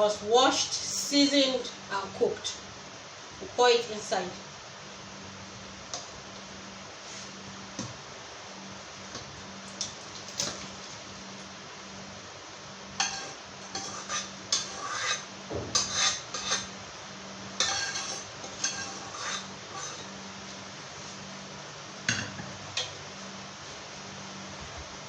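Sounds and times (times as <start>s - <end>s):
faint steady hum: 0.0s - 25.0s
utensil scraping cooking pot: 13.0s - 16.8s, 17.6s - 20.2s.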